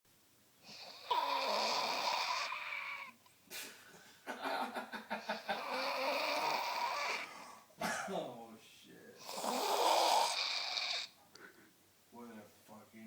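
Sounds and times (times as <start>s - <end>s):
person snoring: 0.7s - 3.2s, 5.4s - 7.6s, 9.2s - 11.2s.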